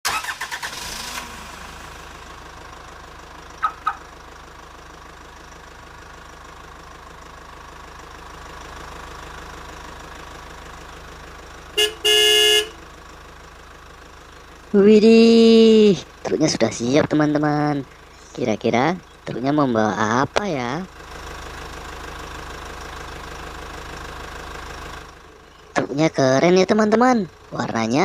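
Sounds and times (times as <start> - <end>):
toy truck electronic horn: 11.8 - 12.8.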